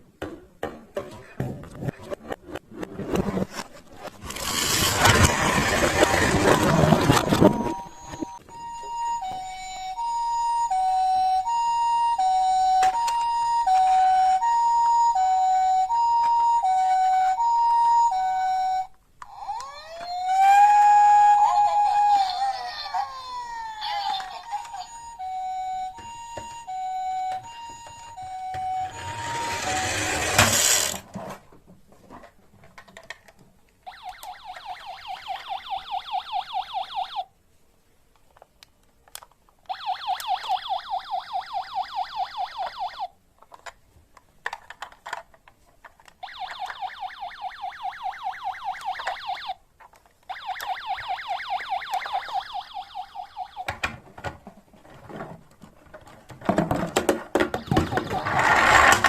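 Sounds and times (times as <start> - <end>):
two-tone toy siren: 4.5 - 31.0, 33.9 - 37.3, 39.6 - 43.2, 46.1 - 49.6, 50.3 - 54.0, 57.5 - 59.0
fast-pulsing electronic siren: 4.8 - 8.4, 19.3 - 30.2, 46.3 - 49.6, 50.3 - 53.8.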